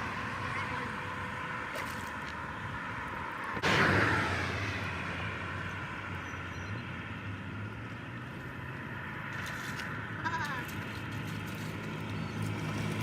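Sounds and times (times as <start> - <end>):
steady engine drone: 2.6 - 13.0.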